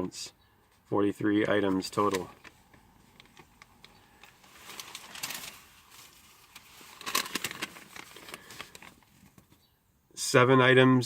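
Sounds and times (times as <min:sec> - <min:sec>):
paper receipts rustling: 0:01.3 - 0:09.6.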